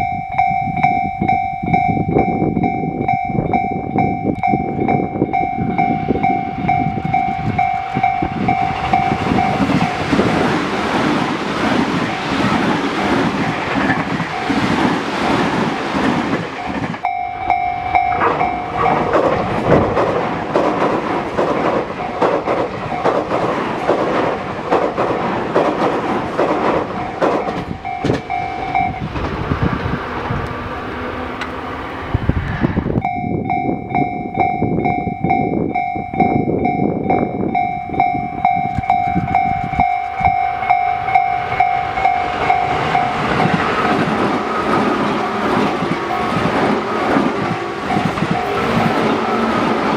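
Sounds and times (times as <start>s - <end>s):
level-crossing warning bell: 0.0s - 49.9s
train wheels clattering: 3.6s - 33.1s, 36.2s - 49.9s.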